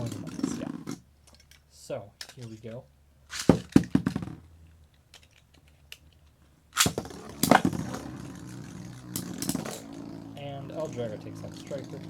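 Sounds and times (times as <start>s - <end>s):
spinning tops clashing: 6.8s - 12.0s
tops whirring and scraping: 6.9s - 12.0s.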